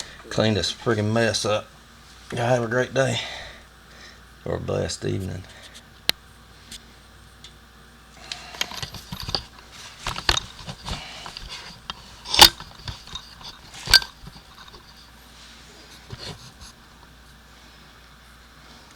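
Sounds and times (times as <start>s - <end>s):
handling rustles and clicks: 8.2s - 17.3s.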